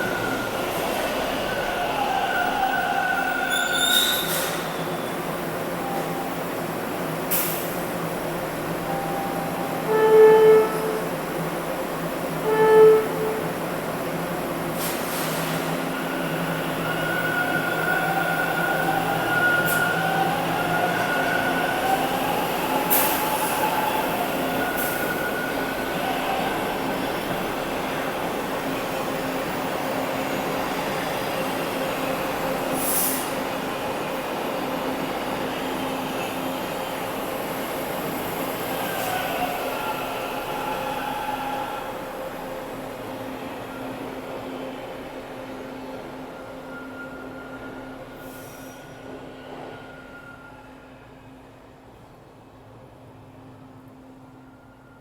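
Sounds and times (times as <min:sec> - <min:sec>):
subway train rumble: 0:00.0 - 0:55.0
train horn blasts: 0:09.1 - 0:11.2, 0:12.4 - 0:13.6.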